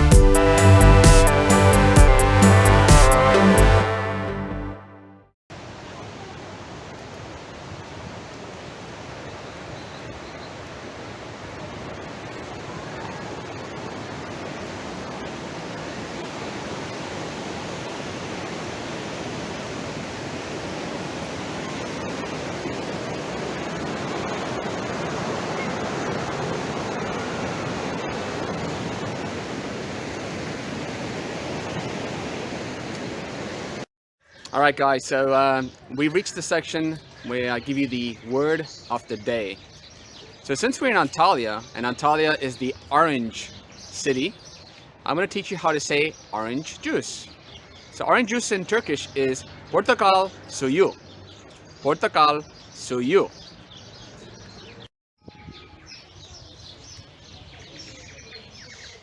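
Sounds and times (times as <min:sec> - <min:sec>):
waterfall rushing: 0:10.6 - 0:33.9.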